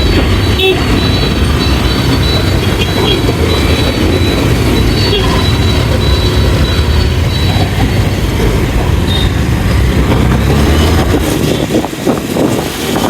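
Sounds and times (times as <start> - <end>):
wind noise on microphone: 6.4 - 13.0.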